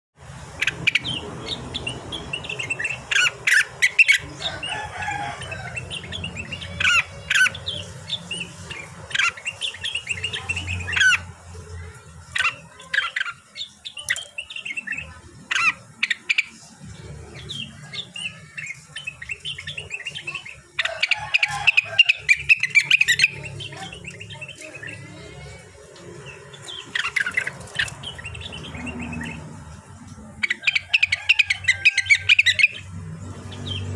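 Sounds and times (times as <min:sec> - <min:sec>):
bird chirping and warbling: 0:00.3 - 0:33.9.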